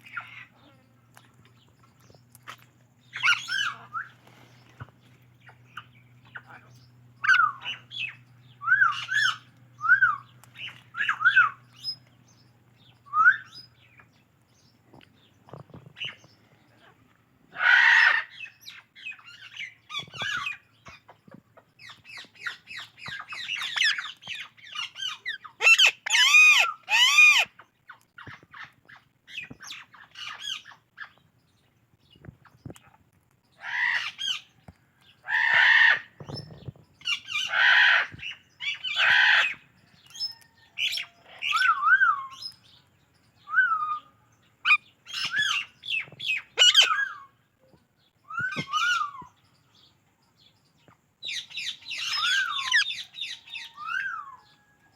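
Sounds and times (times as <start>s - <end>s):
parakeets chirping: 0.0s - 0.9s, 3.0s - 4.0s, 5.4s - 9.5s, 21.8s - 27.5s, 44.6s - 47.2s, 51.2s - 54.1s
loud ringing bird calls: 3.0s - 4.1s, 5.3s - 14.7s, 33.5s - 54.9s
parakeets squawking: 3.1s - 4.0s, 5.7s - 8.2s, 8.8s - 9.5s, 22.4s - 27.6s, 35.3s - 36.4s, 37.0s - 39.6s, 44.6s - 47.2s, 51.3s - 54.2s.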